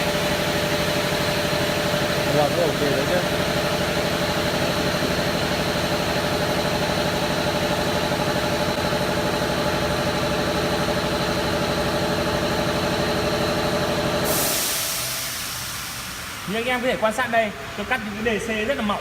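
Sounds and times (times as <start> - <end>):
sudden hiss: 14.2 - 16.9.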